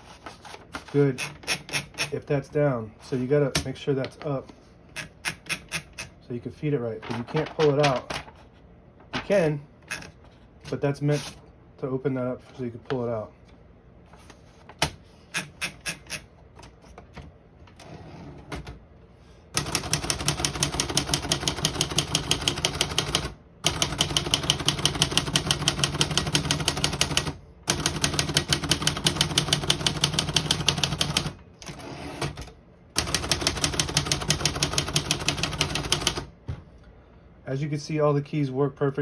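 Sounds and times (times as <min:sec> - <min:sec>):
typewriter keystrokes: 0:19.6 - 0:36.3.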